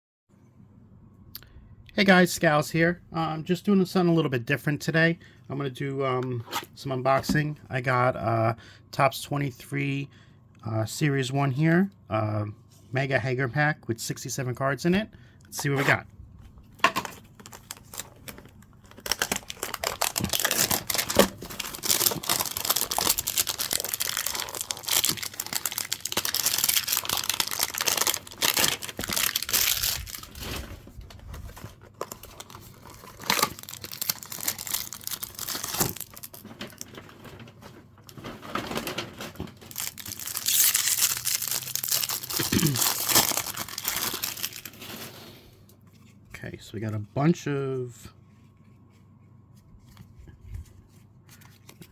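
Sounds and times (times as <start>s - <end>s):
packaging tearing and crinkling: 17.0s - 37.4s, 38.0s - 45.1s.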